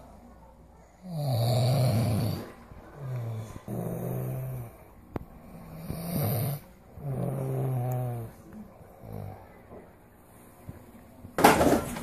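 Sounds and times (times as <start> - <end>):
man snoring heavily: 1.1 - 4.8, 5.6 - 8.3.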